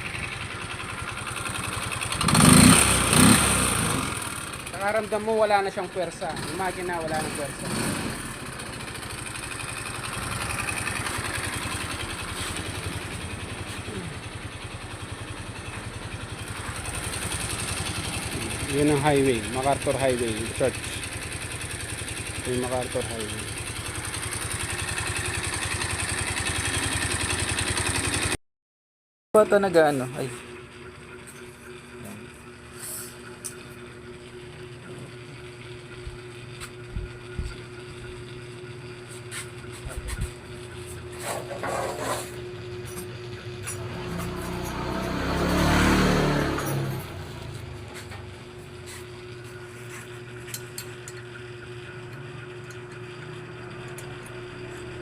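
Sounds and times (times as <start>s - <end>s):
scooter engine running: 0.0s - 28.4s, 29.4s - 55.0s.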